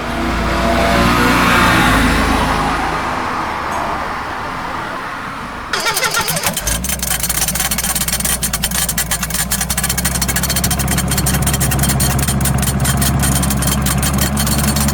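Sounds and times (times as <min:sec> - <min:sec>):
excavator diesel engine: 0:05.7 - 0:14.9
fast clattering: 0:05.7 - 0:14.9.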